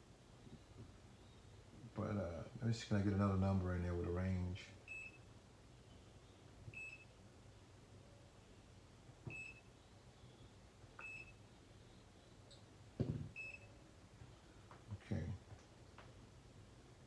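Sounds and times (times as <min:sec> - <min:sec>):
multimeter beeps: 0:04.9 - 0:05.3, 0:06.7 - 0:07.2, 0:09.3 - 0:09.7, 0:11.0 - 0:11.4, 0:13.3 - 0:13.8
soft thump: 0:13.0 - 0:13.4.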